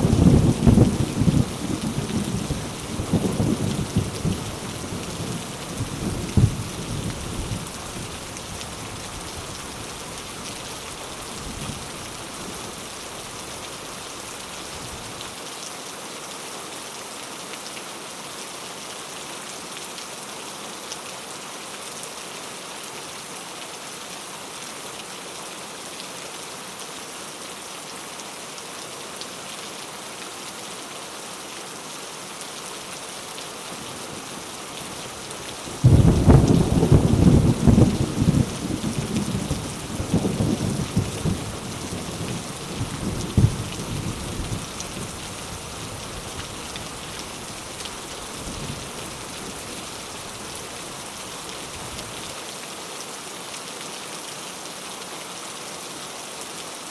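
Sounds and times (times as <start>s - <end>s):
thunder rumbling: 0.0s - 6.7s, 35.8s - 44.8s
steady rain hissing: 0.0s - 56.9s.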